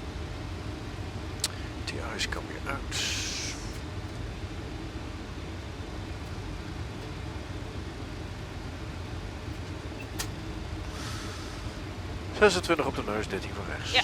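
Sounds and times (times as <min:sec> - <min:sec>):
rush of airflow: 0:02.8 - 0:12.3
sharp click: 0:09.6 - 0:10.4.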